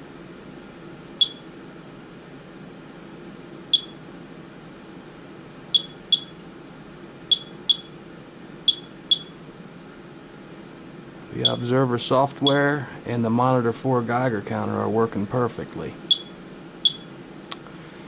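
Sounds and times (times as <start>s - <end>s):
geiger counter beeps: 1.2s - 1.4s, 3.7s - 4.0s, 5.8s - 6.4s, 7.3s - 7.9s, 8.7s - 9.4s, 11.4s - 11.7s, 16.1s - 17.1s.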